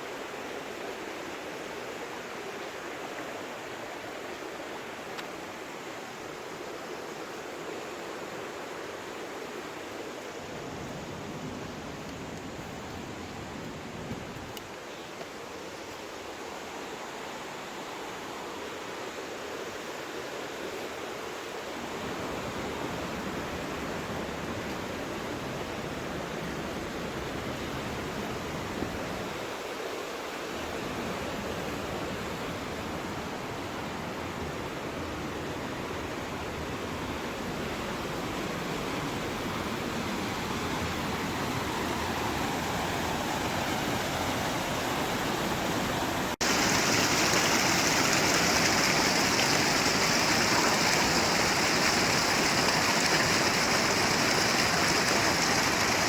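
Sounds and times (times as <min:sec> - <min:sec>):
flowing mountain water: 0:00.0 - 0:56.0.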